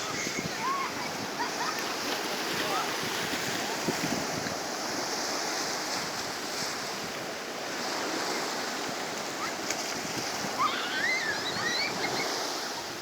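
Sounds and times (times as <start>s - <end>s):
surf washing onto shore: 0.0s - 13.0s
wind on microphone: 0.0s - 13.0s
children squealing: 10.4s - 12.9s.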